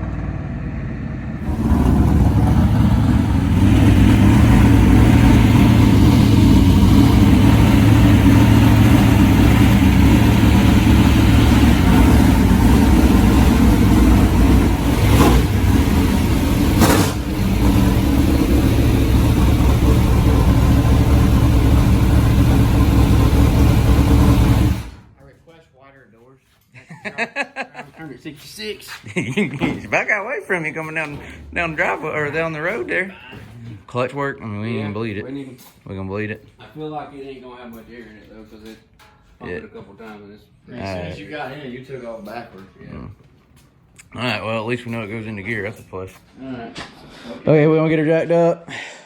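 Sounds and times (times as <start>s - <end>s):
race car engine running loud: 0.0s - 25.1s
sharp engine pops: 16.7s - 17.6s.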